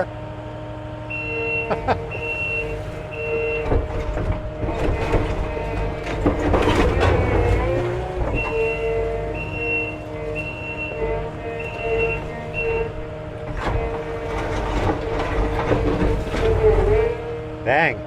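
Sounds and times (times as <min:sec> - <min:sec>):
diesel engine running: 0:00.0 - 0:18.0
backup alarm beeping: 0:01.1 - 0:04.1, 0:07.0 - 0:13.0
wood and debris clattering: 0:01.1 - 0:17.4.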